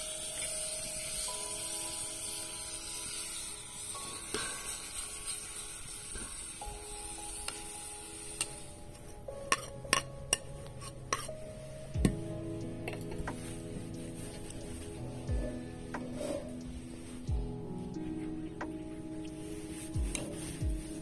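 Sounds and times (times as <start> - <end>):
cooking utensils clinking: 0.0 - 12.2
soft background music: 0.0 - 21.0.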